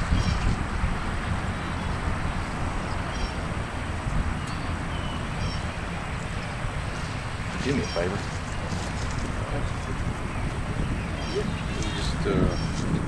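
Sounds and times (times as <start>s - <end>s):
low outdoor rumble: 0.0s - 13.0s
high bird chirps: 4.4s - 8.9s, 10.3s - 12.8s.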